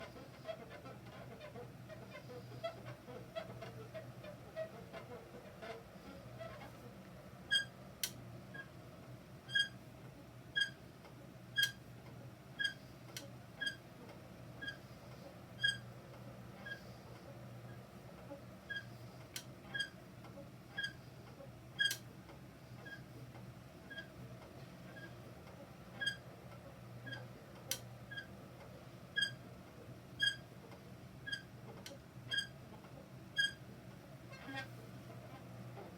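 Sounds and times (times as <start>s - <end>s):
faint low hum: 0.0s - 35.9s
exercise bike squeaking: 7.5s - 7.7s, 9.5s - 9.8s, 10.6s - 10.8s, 12.6s - 12.8s, 13.6s - 13.8s, 14.6s - 14.8s, 15.6s - 15.8s, 19.7s - 20.0s, 20.8s - 21.0s, 26.0s - 26.2s, 28.1s - 28.3s, 29.2s - 29.4s, 30.2s - 30.4s, 32.3s - 32.5s, 33.4s - 33.6s.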